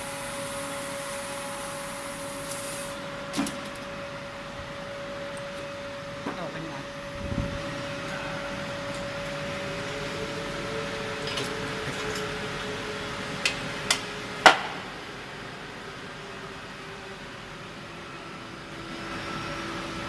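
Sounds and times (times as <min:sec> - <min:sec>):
laser cutter hiss: 0:00.0 - 0:03.1
machine hum: 0:00.0 - 0:20.0.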